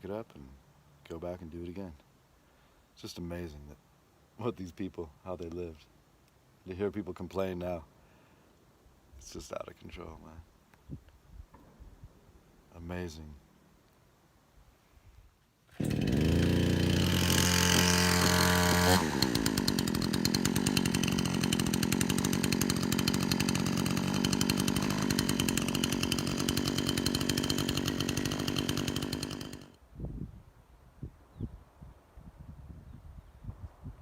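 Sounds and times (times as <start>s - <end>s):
chainsaw cutting firewood: 15.7s - 29.8s.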